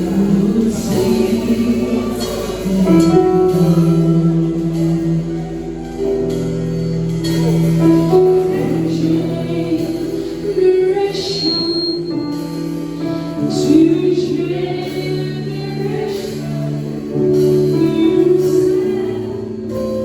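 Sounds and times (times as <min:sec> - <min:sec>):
instrumental backing: 0:00.0 - 0:20.0
voices singing worship song: 0:00.0 - 0:20.0.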